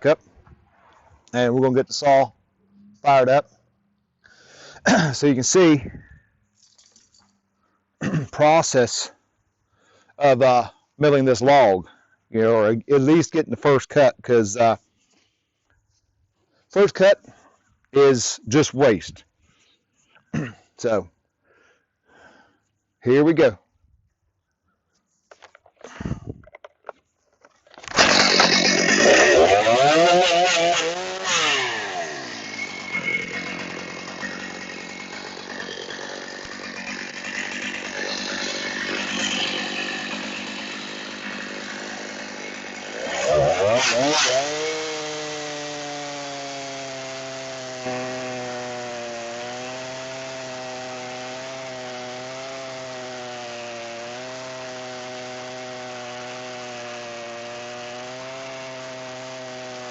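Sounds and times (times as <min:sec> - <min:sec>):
chainsaw revving: 0:27.8 - 0:59.9.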